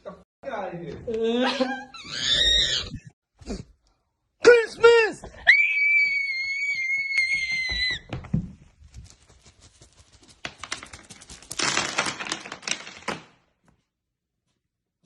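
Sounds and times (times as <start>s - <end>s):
high scream: 5.4s - 8.1s.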